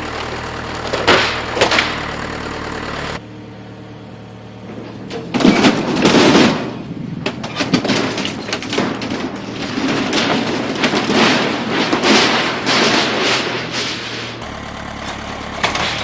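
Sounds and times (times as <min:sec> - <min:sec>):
diesel engine running: 0:00.0 - 0:03.2, 0:14.4 - 0:16.0
wood splintering: 0:00.0 - 0:03.2, 0:14.4 - 0:16.0
wooden framing crashing down: 0:00.0 - 0:03.2.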